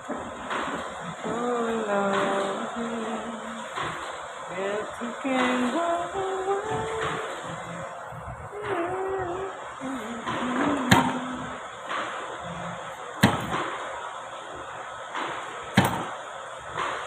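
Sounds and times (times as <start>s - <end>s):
hammer knocks: 10.3s - 11.3s, 13.2s - 13.7s, 15.2s - 16.2s.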